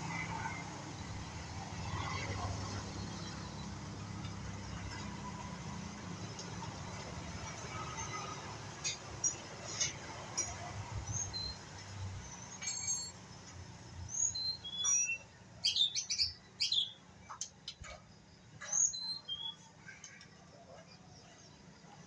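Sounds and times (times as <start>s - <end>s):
bird chirping and whistling: 14.1s - 17.0s, 18.7s - 19.6s.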